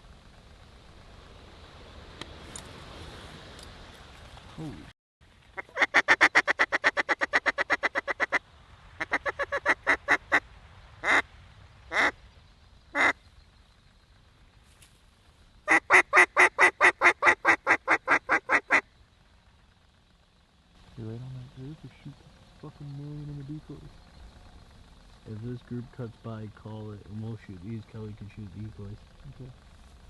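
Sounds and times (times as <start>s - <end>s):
duck call quacks: 5.6s - 8.4s, 9.0s - 10.4s, 11.0s - 11.2s, 11.9s - 12.2s, 13.0s - 13.2s.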